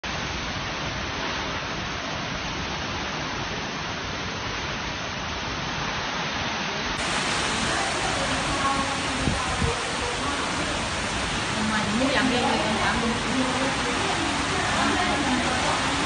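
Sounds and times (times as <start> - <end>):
strong wind blowing: 7.0 - 16.0.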